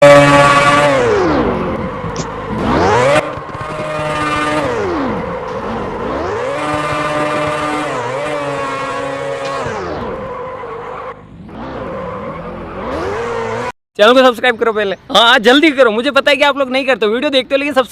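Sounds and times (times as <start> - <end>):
vehicle engine revving: 0.0 - 13.8.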